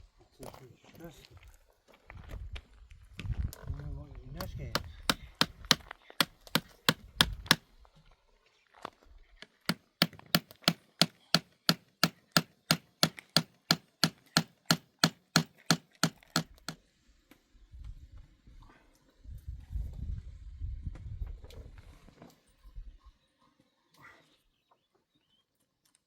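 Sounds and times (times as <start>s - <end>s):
blade chopping wood: 4.4s - 7.6s, 9.6s - 16.8s.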